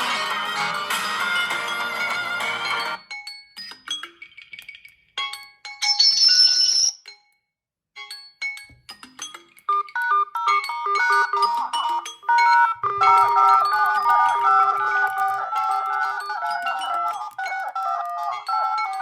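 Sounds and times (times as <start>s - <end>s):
ringtone music: 0.0s - 7.0s, 8.6s - 19.0s
quick repeating melody: 9.7s - 19.0s
high held tone: 10.9s - 19.0s.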